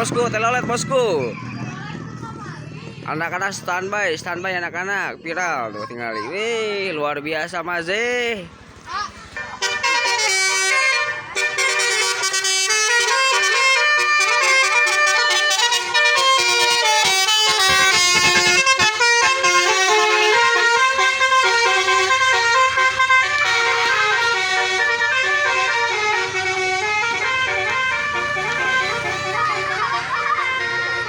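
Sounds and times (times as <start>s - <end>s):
musical bus horn tune: 9.4s - 31.0s.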